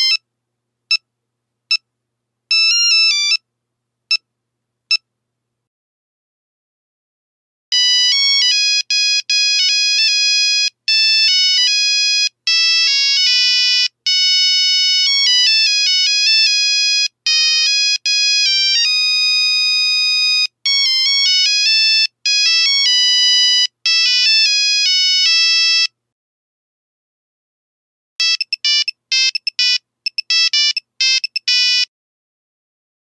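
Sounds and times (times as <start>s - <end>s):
monophonic phone ringtone: 2.5s - 3.4s, 7.7s - 25.9s, 28.2s - 31.9s.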